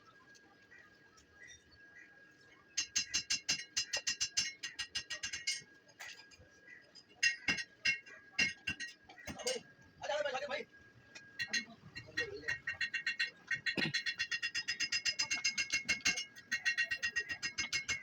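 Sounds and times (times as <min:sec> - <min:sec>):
rapid metallic clicking: 0:11.4 - 0:18.0.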